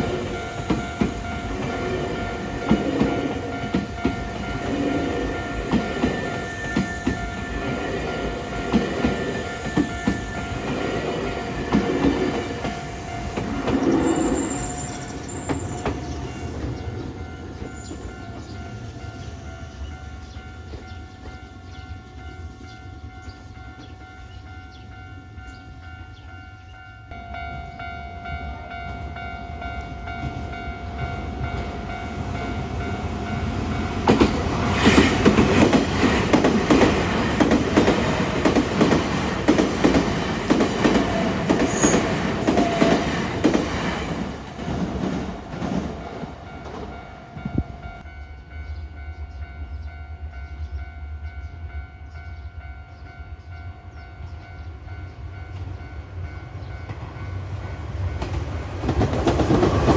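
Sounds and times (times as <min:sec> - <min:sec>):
level crossing alarm ringing: 0:00.0 - 0:16.8, 0:23.2 - 0:44.8
train wheels clattering over rails: 0:00.0 - 0:16.9, 0:33.8 - 0:46.9, 0:58.2 - 0:59.9.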